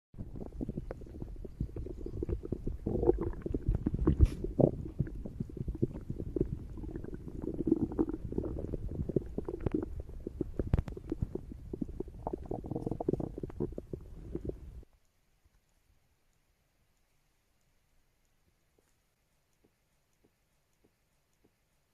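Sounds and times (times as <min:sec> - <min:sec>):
stomach growling: 0:00.2 - 0:14.9.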